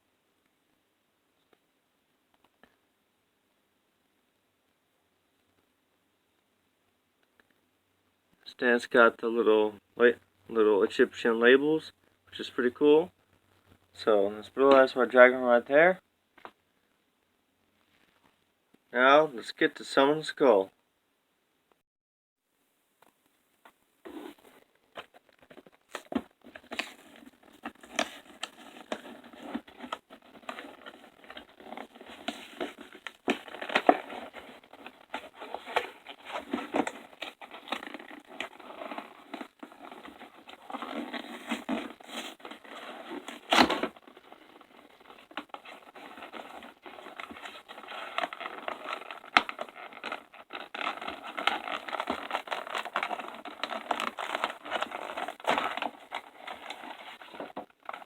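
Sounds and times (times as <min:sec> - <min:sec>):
packaging crinkling and tearing: 0:25.2 - 0:58.0.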